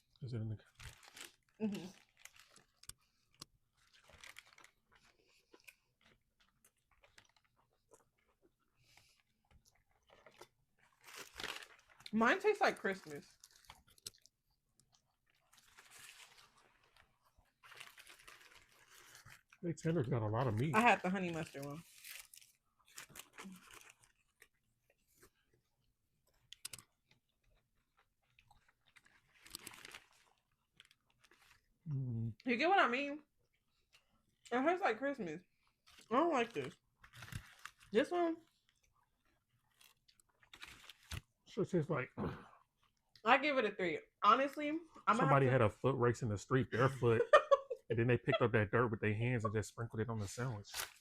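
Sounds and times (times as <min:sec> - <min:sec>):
chewing and crunching food: 0:00.1 - 0:32.3, 0:35.4 - 0:41.4.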